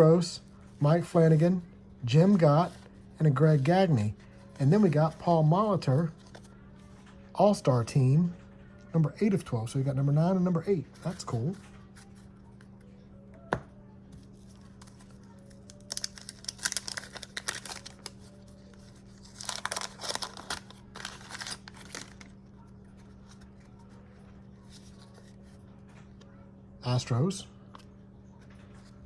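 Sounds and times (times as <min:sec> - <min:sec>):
paper wrapper tearing and crinkling: 0:14.4 - 0:23.4.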